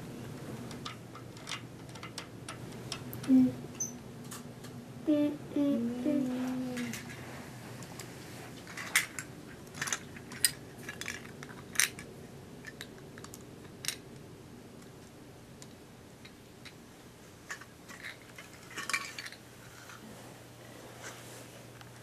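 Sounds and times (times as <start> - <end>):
clicks of small toy pieces: 8.8 - 14.0.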